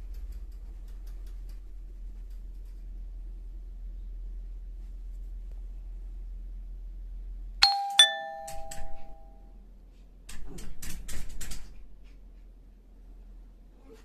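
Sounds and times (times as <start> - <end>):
two-note doorbell chime: 7.6 - 9.4.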